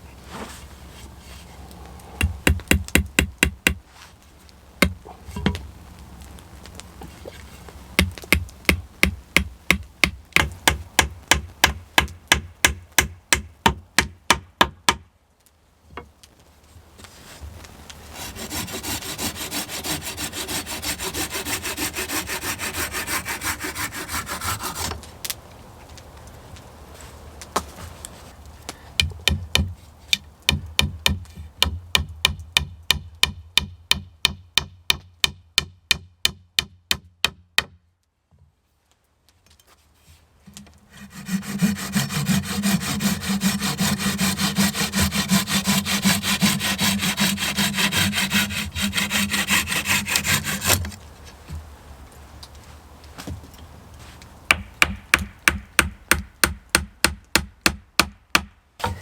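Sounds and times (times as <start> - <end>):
hand saw cutting wood: 18.1 - 25.0, 40.9 - 51.0.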